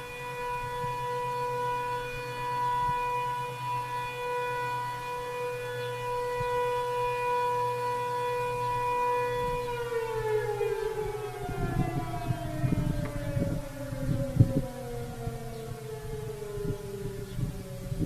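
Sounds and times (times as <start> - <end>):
warning siren winding down: 0.0 - 18.0
uneven low rumbling: 8.7 - 18.0.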